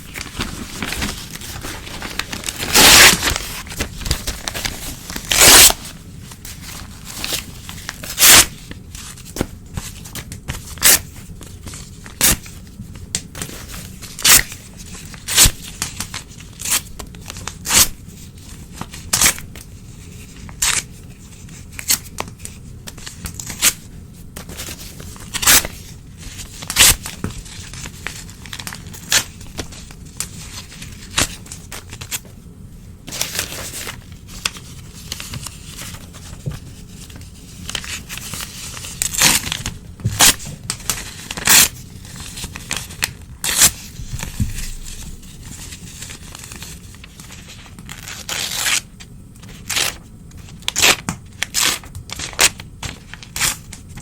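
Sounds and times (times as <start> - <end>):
newspaper tearing: 0.0 - 9.4, 13.4 - 18.0, 24.5 - 32.2, 33.1 - 36.4, 37.2 - 48.9, 50.7 - 54.0
paper rustling: 0.0 - 17.8, 33.1 - 48.8.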